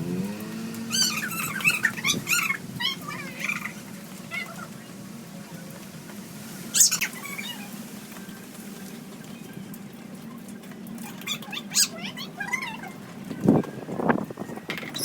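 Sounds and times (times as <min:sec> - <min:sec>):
high wavering chirping calls: 0:00.6 - 0:04.9, 0:06.7 - 0:07.8, 0:11.1 - 0:13.6.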